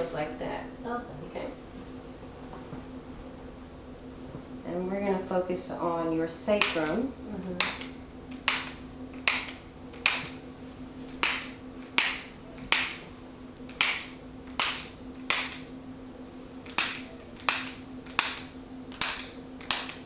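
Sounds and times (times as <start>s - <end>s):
adjusting instrument sharp clicks: 6.6s - 7.0s, 7.6s - 10.4s, 11.1s - 15.7s, 16.6s - 20.0s.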